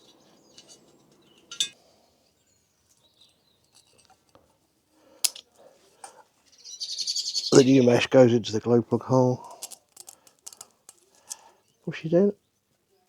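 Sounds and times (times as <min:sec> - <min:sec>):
metal parts clicking and tapping: 0:00.5 - 0:01.8, 0:03.2 - 0:04.4, 0:05.2 - 0:06.2, 0:09.5 - 0:11.4.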